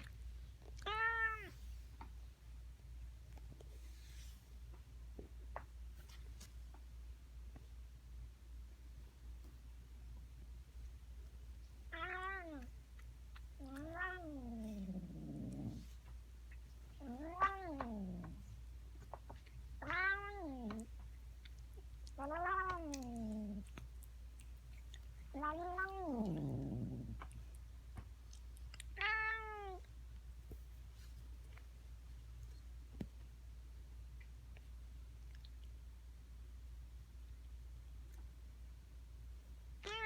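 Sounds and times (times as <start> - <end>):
cat meowing: 0.8 - 1.6, 13.6 - 15.8, 19.8 - 20.9, 29.0 - 29.8.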